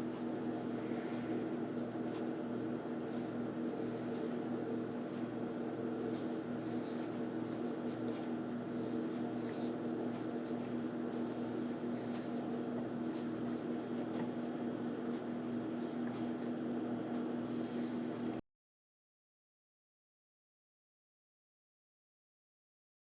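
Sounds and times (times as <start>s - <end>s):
machine motor hum: 0.0s - 18.4s.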